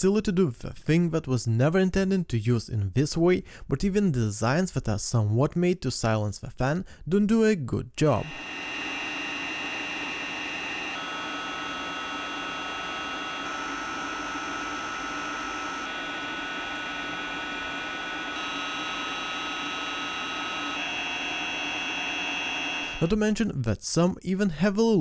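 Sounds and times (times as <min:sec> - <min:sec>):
high-pitched whine tones: 0:08.2 - 0:23.2
cooling fan air rush: 0:08.3 - 0:23.1.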